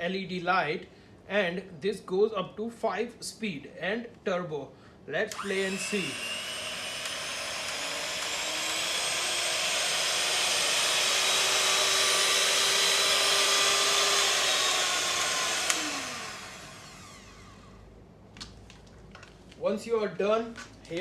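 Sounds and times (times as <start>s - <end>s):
hand mixer motor whining: 5.3s - 17.8s.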